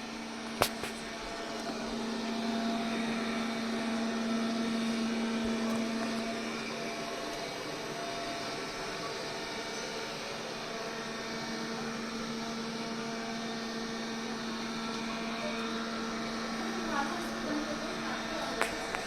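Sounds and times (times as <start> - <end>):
robot vacuum motor hum: 0.0 - 19.0
sharp click: 0.6 - 1.0.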